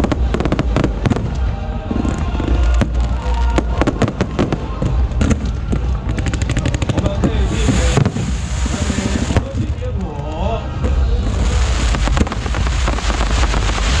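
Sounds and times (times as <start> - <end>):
fireworks bangs: 0.0 - 14.0
low rumble: 0.0 - 14.0.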